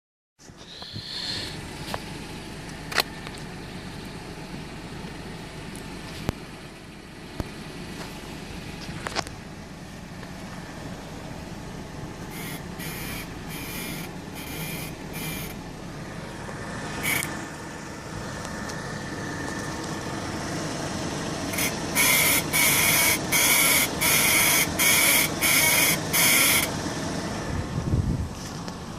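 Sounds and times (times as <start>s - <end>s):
suspension squeaking: 0.5s - 4.0s, 12.1s - 27.7s.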